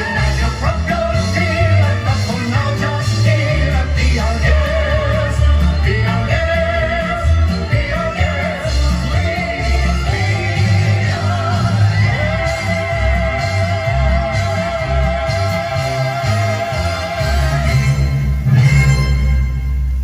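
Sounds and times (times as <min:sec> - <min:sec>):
person singing: 0:00.0 - 0:18.0
live band playing: 0:00.0 - 0:20.0.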